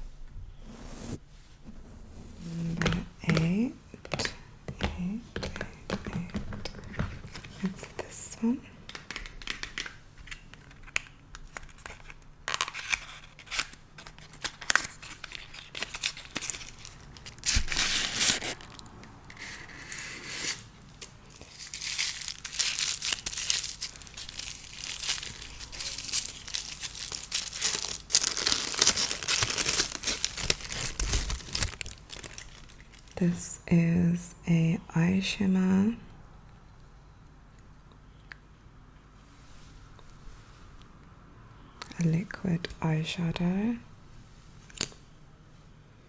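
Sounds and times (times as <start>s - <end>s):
packaging tearing and crinkling: 8.9s - 33.2s.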